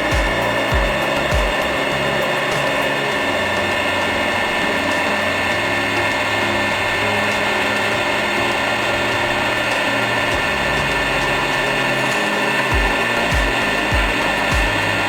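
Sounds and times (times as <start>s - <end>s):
drilling machine motor whine: 0.0s - 15.0s.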